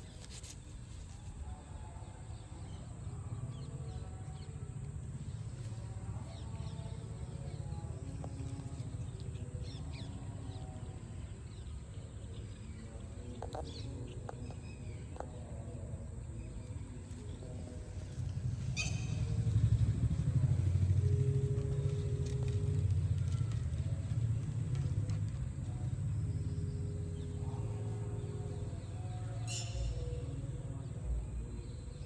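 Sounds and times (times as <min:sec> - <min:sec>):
small birds chirping: 0:00.0 - 0:32.0
steady low rumble: 0:16.0 - 0:32.0.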